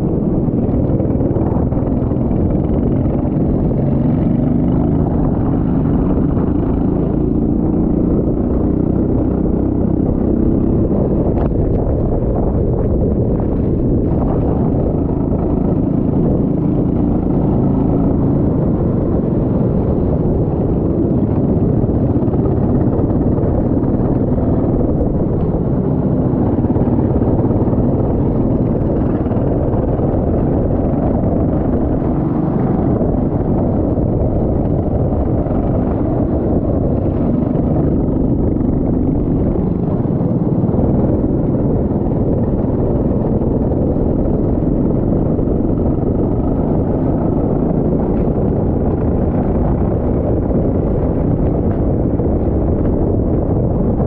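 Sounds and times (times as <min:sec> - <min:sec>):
steady low rumble: 0:00.0 - 0:54.0.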